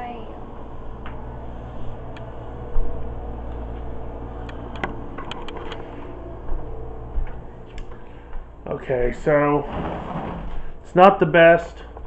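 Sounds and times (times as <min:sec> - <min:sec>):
low indoor hum: 0:00.0 - 0:12.0.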